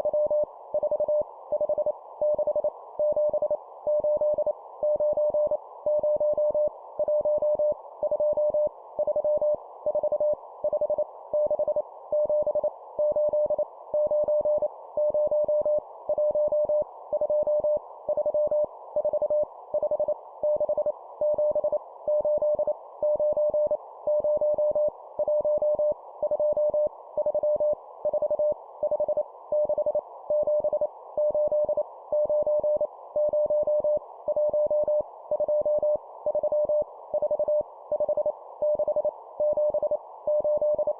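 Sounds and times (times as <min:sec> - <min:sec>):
morse code beeps: 0:12.2 - 0:40.9.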